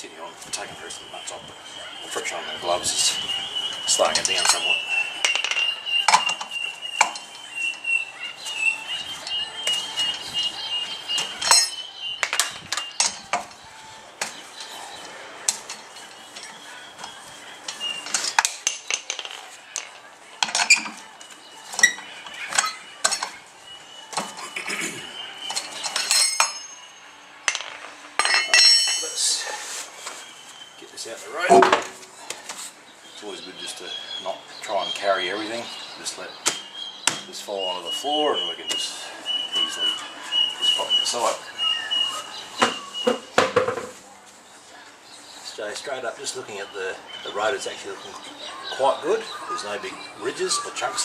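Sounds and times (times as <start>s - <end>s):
wheel spanner clinking on nuts: 25.7s - 29.2s.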